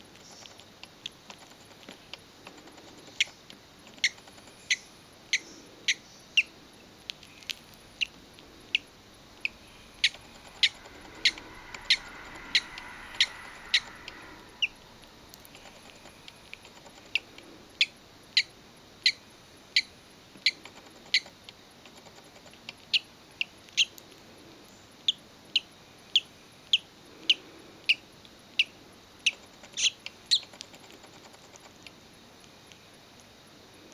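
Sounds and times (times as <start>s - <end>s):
bird chick peeping: 1.3s - 21.4s, 28.6s - 31.7s.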